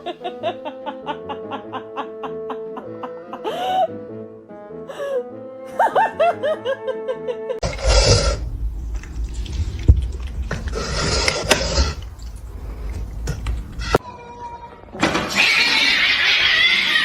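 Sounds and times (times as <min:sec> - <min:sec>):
heavy rumble: 0:07.6 - 0:14.0.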